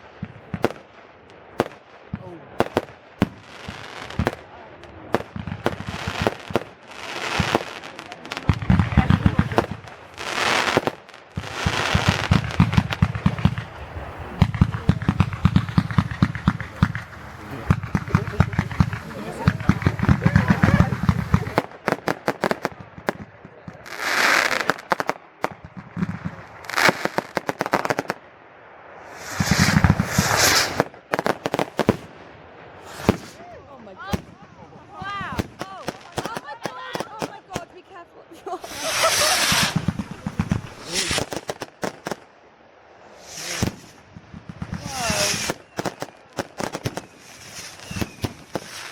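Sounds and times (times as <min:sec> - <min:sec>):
fireworks bangs and crackles: 0:00.0 - 0:48.9
hissing rush of fireworks: 0:00.0 - 0:48.9.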